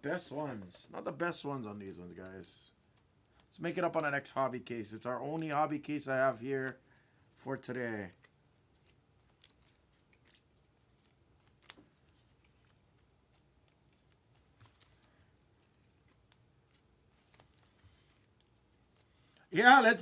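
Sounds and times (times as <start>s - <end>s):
trading cards being handled: 7.9s - 20.0s.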